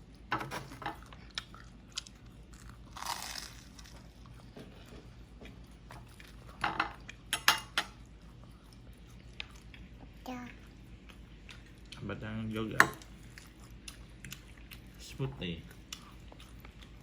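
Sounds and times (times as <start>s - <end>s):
tableware clicking and clinking: 6.6s - 8.0s, 12.8s - 13.1s.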